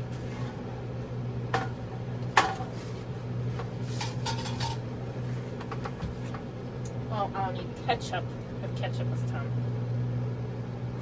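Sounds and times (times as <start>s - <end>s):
steady low hum: 0.0s - 11.0s
utensils and dishes clinking: 3.6s - 4.9s.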